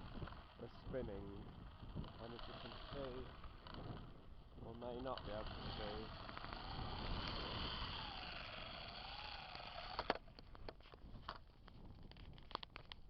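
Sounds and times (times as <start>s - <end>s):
propellers whining: 0.0s - 10.7s
wind buffeting microphone: 0.0s - 13.0s
sharp clicks: 4.8s - 8.2s, 8.9s - 13.0s.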